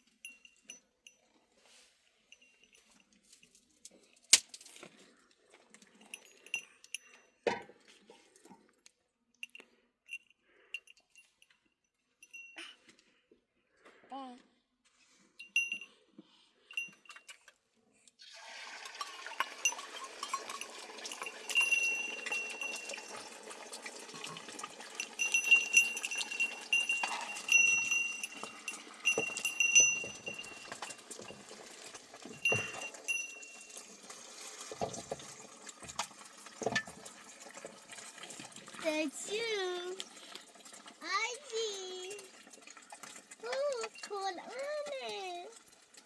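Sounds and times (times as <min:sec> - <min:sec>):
livestock bells clinking: 0:00.0 - 0:03.6, 0:05.9 - 0:07.4, 0:09.4 - 0:12.9, 0:15.4 - 0:17.5, 0:18.8 - 0:35.4, 0:38.8 - 0:45.8
herd moving: 0:19.0 - 0:45.9.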